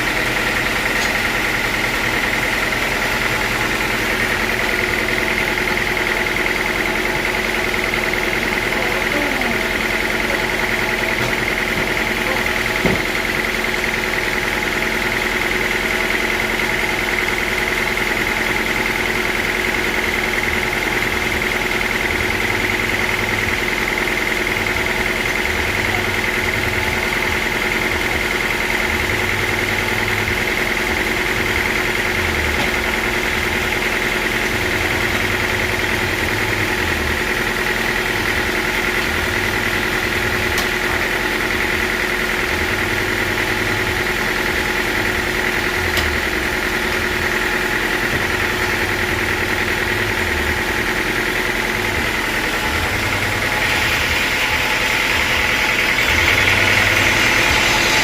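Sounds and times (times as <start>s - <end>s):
machine hum: 0.0s - 58.0s
saw whining: 18.2s - 58.0s.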